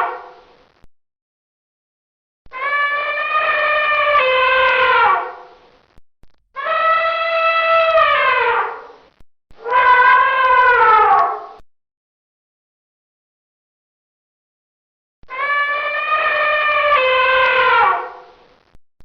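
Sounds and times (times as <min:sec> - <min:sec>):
elephant trumpeting: 0:02.5 - 0:05.4, 0:06.6 - 0:08.9, 0:09.6 - 0:11.6, 0:15.3 - 0:18.3.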